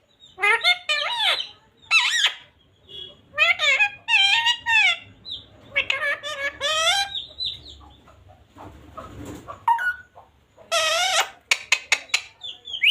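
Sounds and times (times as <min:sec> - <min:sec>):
parrot chirps: 0:00.2 - 0:07.8, 0:09.6 - 0:10.1, 0:10.7 - 0:12.9
parrot squawking: 0:00.3 - 0:07.8, 0:09.6 - 0:10.1, 0:10.7 - 0:12.9.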